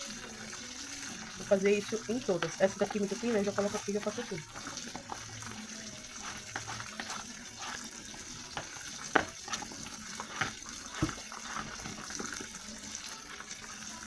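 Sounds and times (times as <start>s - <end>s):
knife cutting potatoes on board: 6.1s - 12.6s.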